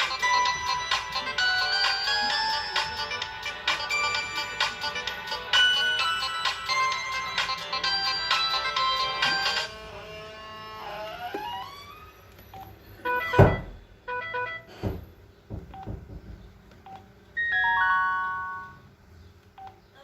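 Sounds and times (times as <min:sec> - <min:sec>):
phone ringtone synth melody: 0:00.0 - 0:09.7, 0:13.1 - 0:14.7, 0:17.4 - 0:18.9.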